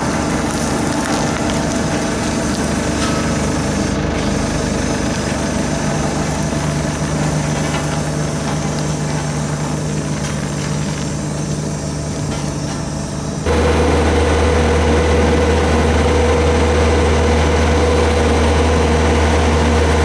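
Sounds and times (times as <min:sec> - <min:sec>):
road roller engine humming: 0:00.0 - 0:20.0.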